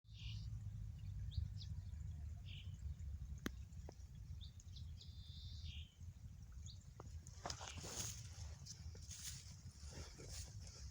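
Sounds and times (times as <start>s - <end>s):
steady low rumble: 0.1s - 7.4s
birds chirping: 0.1s - 8.4s.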